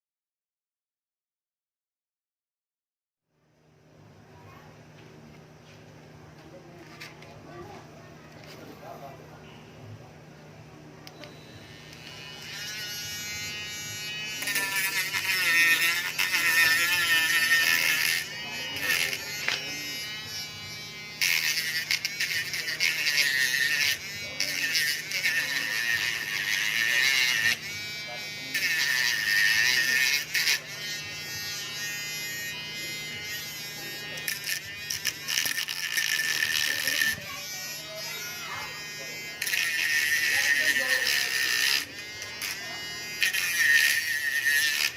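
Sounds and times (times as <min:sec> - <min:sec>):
electric power tool whine: 0:11.0 - 0:44.9.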